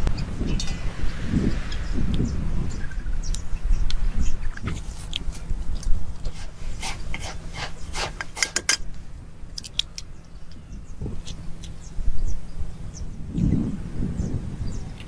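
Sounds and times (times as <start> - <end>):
steady low rumble: 0.0 - 15.0
rough scraping and rubbing: 4.6 - 8.9.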